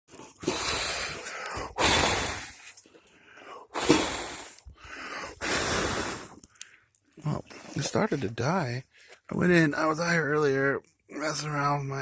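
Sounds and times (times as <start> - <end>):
person breathing hard: 0.2 - 6.9.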